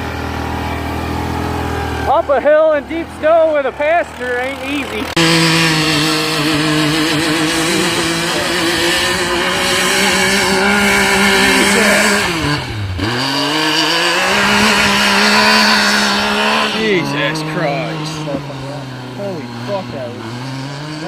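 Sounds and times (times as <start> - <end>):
off-road vehicle engine revving: 0.0 - 21.0.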